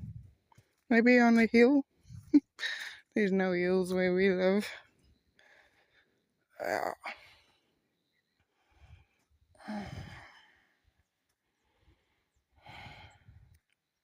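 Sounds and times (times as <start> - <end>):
person sighing heavily: 6.6 - 7.4, 9.6 - 10.6.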